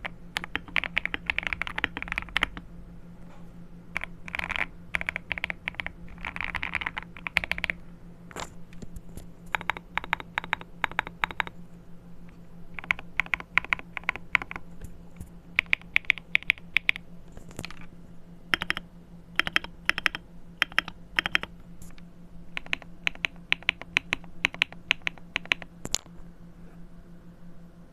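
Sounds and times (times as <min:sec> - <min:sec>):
clacky mechanical keyboard typing: 0:00.0 - 0:02.6, 0:04.0 - 0:08.4, 0:09.5 - 0:11.6, 0:12.8 - 0:14.7, 0:15.6 - 0:17.0, 0:18.5 - 0:18.8, 0:19.4 - 0:21.5, 0:22.5 - 0:26.0.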